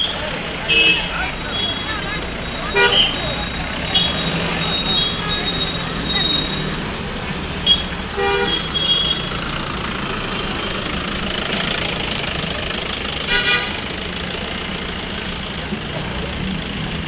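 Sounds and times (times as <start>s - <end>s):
road traffic: 0.0s - 17.0s
vehicle horn honks: 0.7s - 6.7s, 7.6s - 9.4s, 13.3s - 13.8s.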